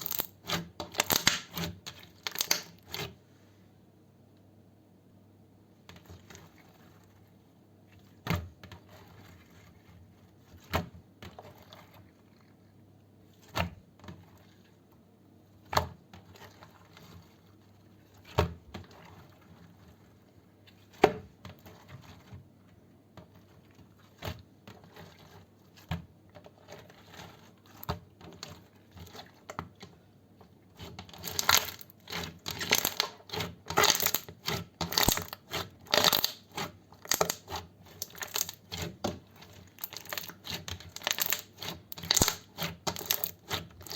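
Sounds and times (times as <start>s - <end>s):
slime popping and clicking: 0.9s - 1.5s, 2.2s - 2.8s.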